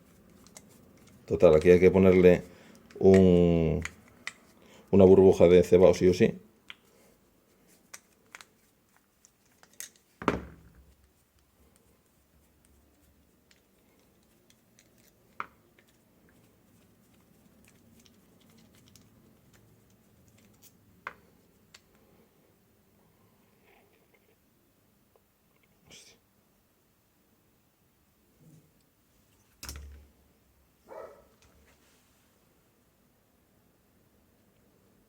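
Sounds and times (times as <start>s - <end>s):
tools and small parts clicking: 9.2s - 10.1s.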